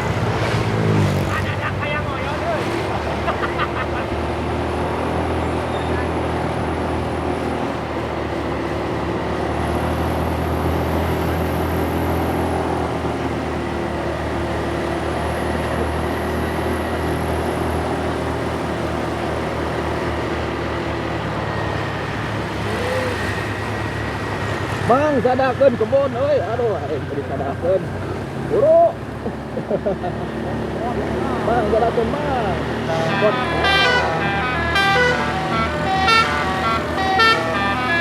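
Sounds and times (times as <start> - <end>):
road traffic noise: 0.0 - 38.0
vehicle engine running: 0.0 - 38.0.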